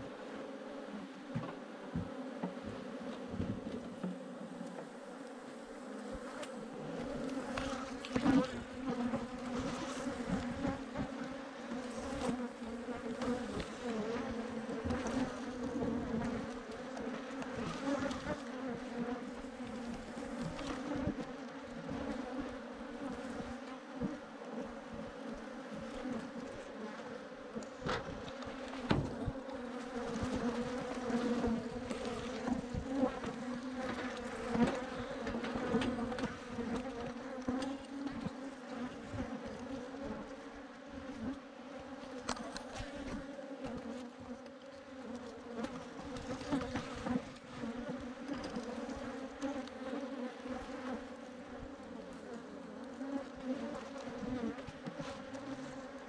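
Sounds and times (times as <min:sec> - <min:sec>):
bees buzzing: 0:00.0 - 0:56.0.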